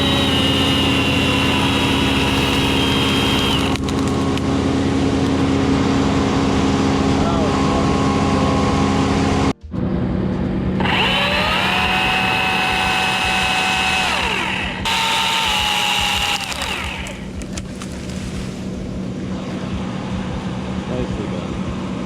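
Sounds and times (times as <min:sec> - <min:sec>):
electric chainsaw whining: 0:00.0 - 0:04.2, 0:10.8 - 0:17.8.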